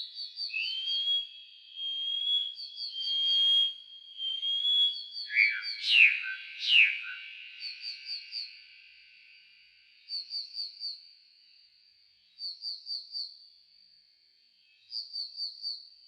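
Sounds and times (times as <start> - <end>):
slowed nightingale song: 0.0 - 11.1.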